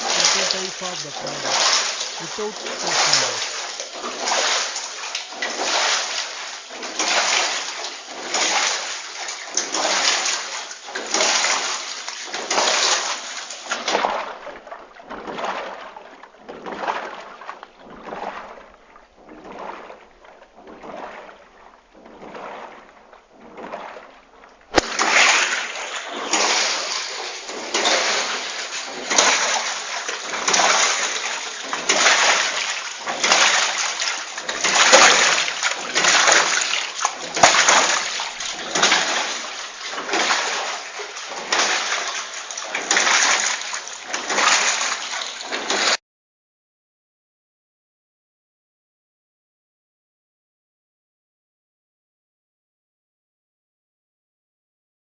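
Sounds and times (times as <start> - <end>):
water splashing and sloshing in waves: 0.0 - 46.0.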